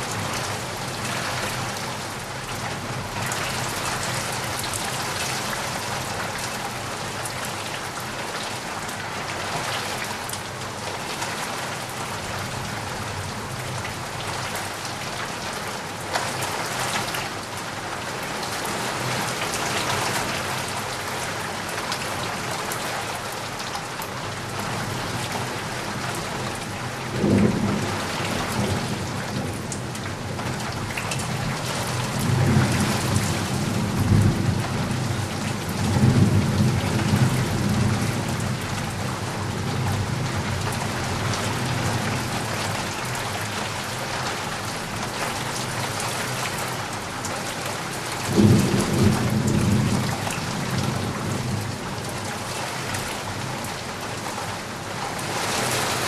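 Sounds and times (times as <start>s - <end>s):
steady rain falling: 0.0s - 56.0s
low rumble of thunder: 27.1s - 30.6s, 31.2s - 42.5s, 48.2s - 52.1s.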